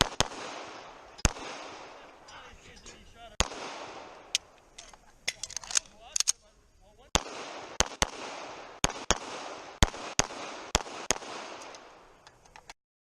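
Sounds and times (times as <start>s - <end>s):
pistol shots with echo: 0.0s - 2.2s, 3.4s - 4.5s, 7.1s - 12.2s.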